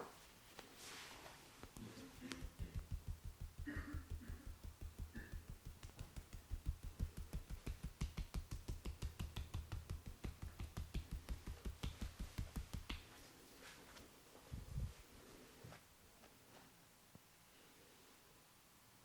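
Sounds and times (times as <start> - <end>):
hands tapping on head: 1.6 - 13.2.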